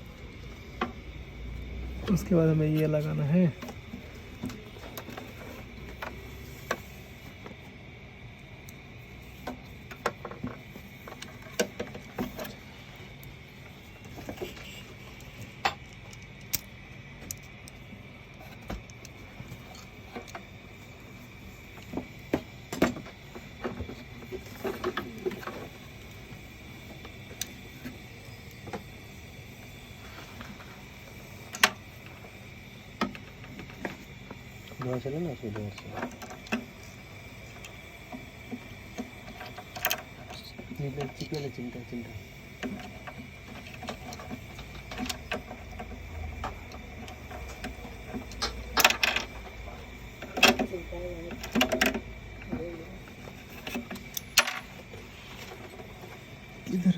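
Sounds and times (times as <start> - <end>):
faint steady high hum: 0.0 - 56.9
plastic parts clicking and knocking: 42.6 - 52.6.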